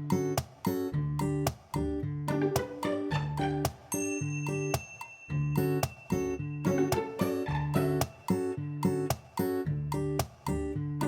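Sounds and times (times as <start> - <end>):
plucked string music: 0.0 - 4.8, 5.6 - 11.0.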